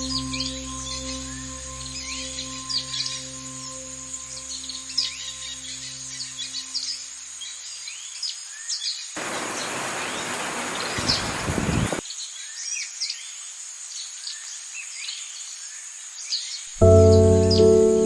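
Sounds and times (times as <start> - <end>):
singing bowl tone: 0.0 - 6.8, 16.8 - 18.0
songbirds chirping: 0.0 - 18.0
steady high hiss: 9.2 - 12.0.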